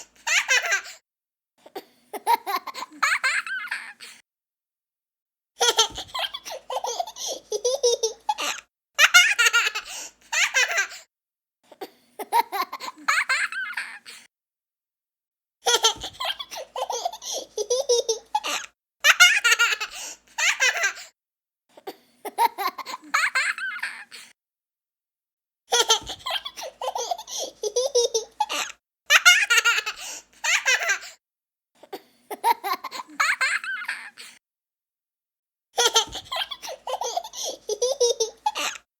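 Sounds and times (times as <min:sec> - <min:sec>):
young child giggling: 0:05.6 - 0:11.0, 0:15.7 - 0:21.1, 0:22.3 - 0:24.1, 0:25.7 - 0:31.2, 0:35.8 - 0:38.8.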